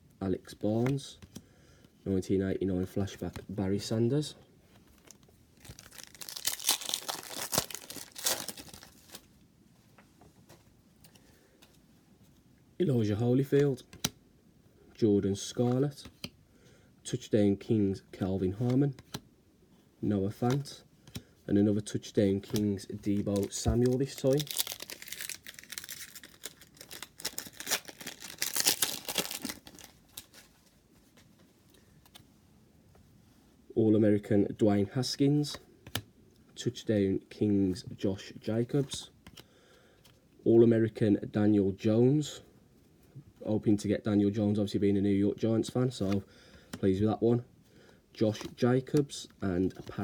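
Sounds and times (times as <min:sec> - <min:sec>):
wrapper crinkling and tearing: 0:05.0 - 0:09.3, 0:22.5 - 0:30.5.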